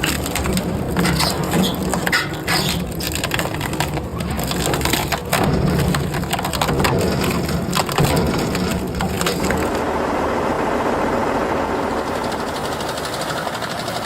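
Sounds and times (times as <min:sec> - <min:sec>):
wood cracking and splintering: 0:00.0 - 0:10.2
diesel engine droning: 0:00.0 - 0:14.0.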